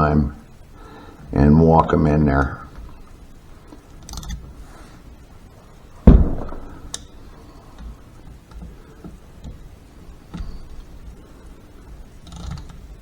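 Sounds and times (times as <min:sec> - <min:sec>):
heavy metal clunk: 0:06.0 - 0:07.0.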